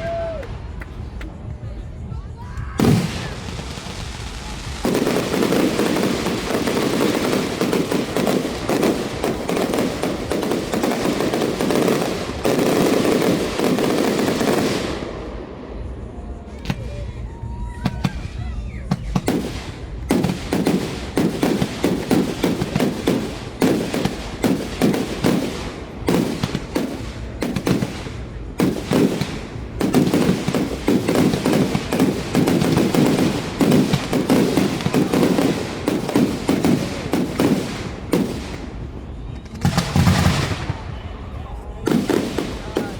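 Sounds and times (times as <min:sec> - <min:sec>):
fireworks bangs and crackle: 0:00.0 - 0:42.9
firework whistles: 0:02.6 - 0:42.9.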